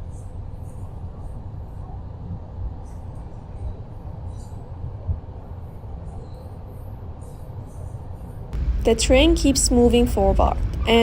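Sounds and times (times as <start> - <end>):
train rumble from inside: 8.6 - 11.0.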